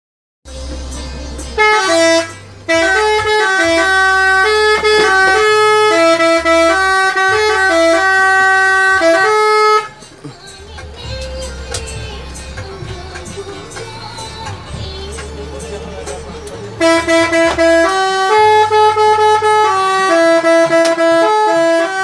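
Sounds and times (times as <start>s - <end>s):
multi-tone air horn melody: 1.5s - 10.0s, 16.8s - 22.0s.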